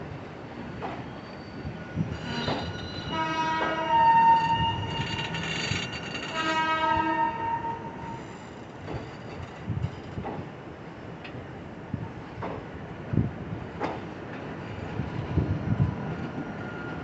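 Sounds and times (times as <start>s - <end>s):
train rumbling on track: 0.0s - 17.0s
locomotive horn blasts: 3.0s - 4.9s, 6.2s - 8.0s.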